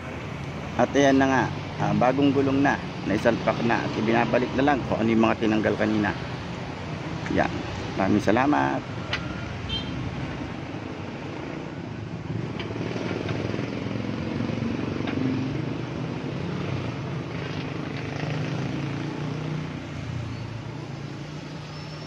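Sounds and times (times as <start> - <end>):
vehicles passing on road: 0.0 - 22.0.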